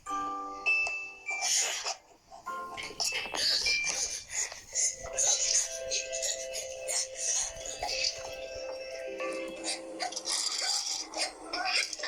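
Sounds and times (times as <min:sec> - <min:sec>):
cartoon background music: 0:02.5 - 0:12.0.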